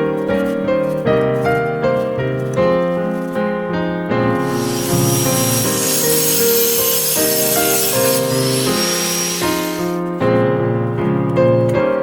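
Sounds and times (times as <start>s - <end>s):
steady hiss: 4.3s - 10.0s.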